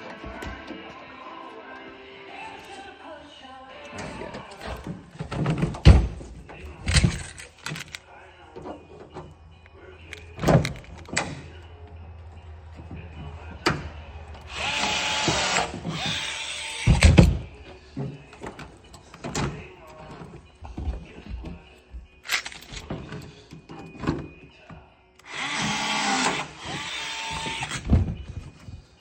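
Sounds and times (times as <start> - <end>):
power drill drilling sheet metal: 14.5 - 17.0, 25.2 - 27.8.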